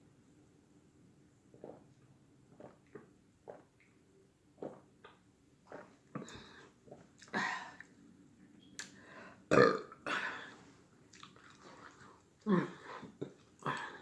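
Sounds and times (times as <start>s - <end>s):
person burping: 9.5s - 10.5s, 12.4s - 14.0s.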